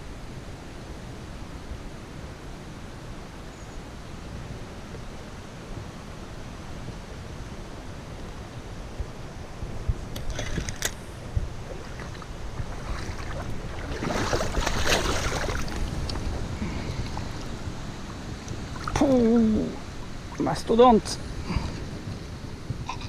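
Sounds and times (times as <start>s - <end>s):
wind buffeting microphone: 0.0s - 23.0s
water splashing: 10.2s - 21.2s.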